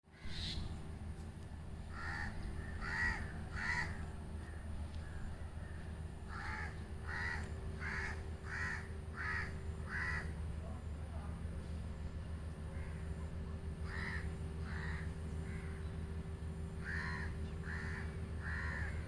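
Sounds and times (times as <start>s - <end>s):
steady low hum: 0.1s - 19.0s
bird giving harsh calls: 1.9s - 4.0s, 6.3s - 10.4s, 16.8s - 19.0s.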